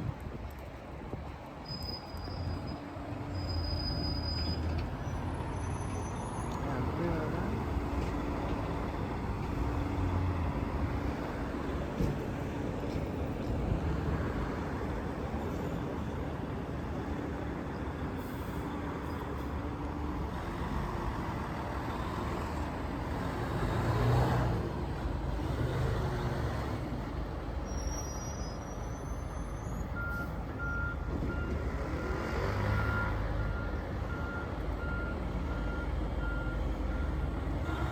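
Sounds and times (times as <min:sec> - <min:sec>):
city traffic noise: 0:00.0 - 0:37.9
reversing alarm beeping: 0:27.7 - 0:37.4.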